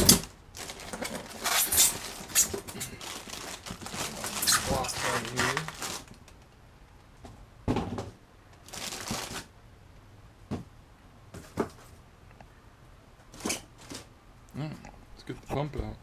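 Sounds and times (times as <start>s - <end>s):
cardboard and packaging rustling: 0.0s - 6.4s, 8.6s - 9.5s
knocks and thumps: 7.2s - 8.2s, 10.5s - 10.7s.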